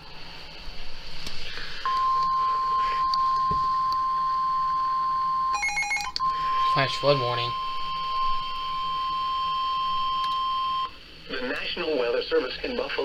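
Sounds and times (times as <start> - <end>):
faint radio hiss: 0.0 - 13.0
steady alarm tone: 1.8 - 11.2.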